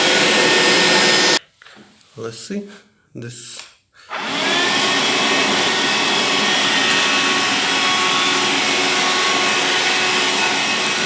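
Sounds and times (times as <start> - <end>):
handheld vacuum cleaner running: 0.0 - 1.4, 4.1 - 11.0.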